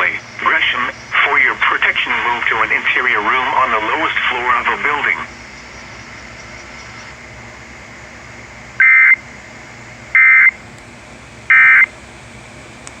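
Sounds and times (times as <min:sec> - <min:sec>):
radio hiss: 0:00.0 - 0:09.2, 0:11.5 - 0:11.9
warbling two-tone data bursts: 0:08.8 - 0:09.2.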